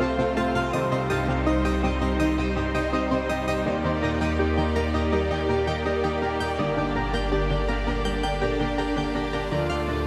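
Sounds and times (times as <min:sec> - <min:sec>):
calm instrumental music: 0:00.0 - 0:10.0.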